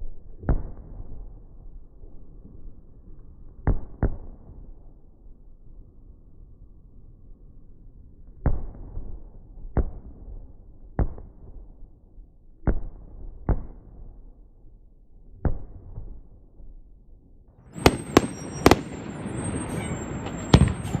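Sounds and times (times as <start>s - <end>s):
firework crackling hiss: 17.7s - 21.0s
muffled firework bangs: 17.7s - 21.0s
sharp firework bangs: 17.7s - 21.0s.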